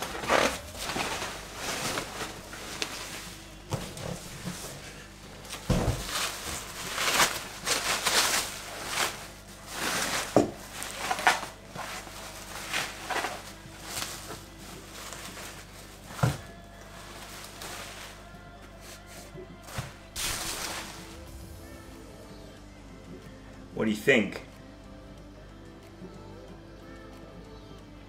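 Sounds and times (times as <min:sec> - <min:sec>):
packaging rustling: 0:00.0 - 0:21.3.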